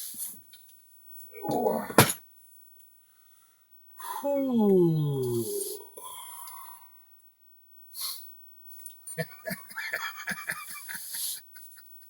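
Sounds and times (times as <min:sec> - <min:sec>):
breathy exhale: 0:05.3 - 0:07.0.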